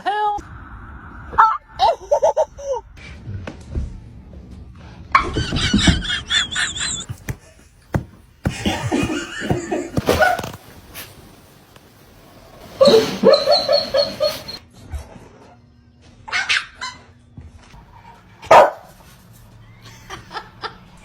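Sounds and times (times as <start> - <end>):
people laughing: 8.5 - 10.5, 19.8 - 21.0.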